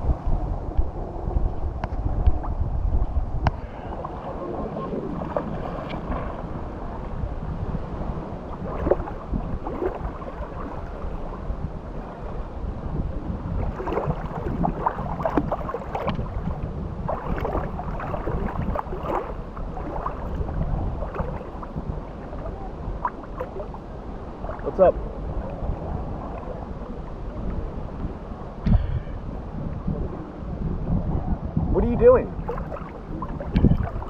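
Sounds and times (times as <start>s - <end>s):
sea wash: 0.0s - 34.0s
wind rumbling on microphone: 0.0s - 34.0s.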